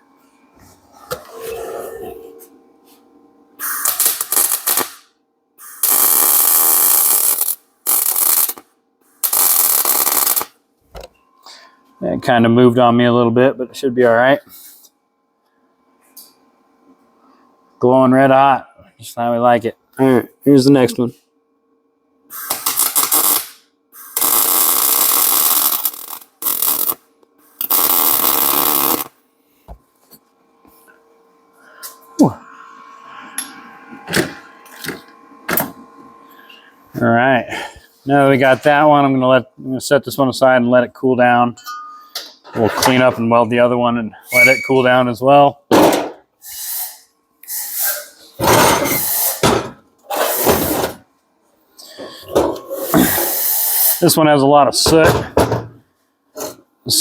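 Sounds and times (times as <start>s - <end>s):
welder arc crackling and hissing: 3.6s - 10.6s, 22.3s - 29.2s, 46.4s - 48.3s, 48.9s - 49.4s, 52.7s - 54.8s.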